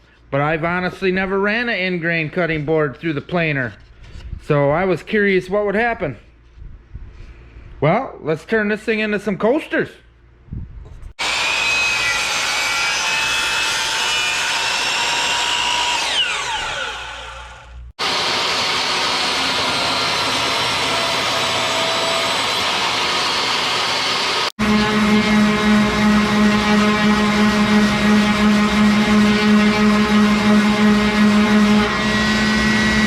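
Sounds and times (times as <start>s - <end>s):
power saw cutting wood: 11.2s - 33.0s.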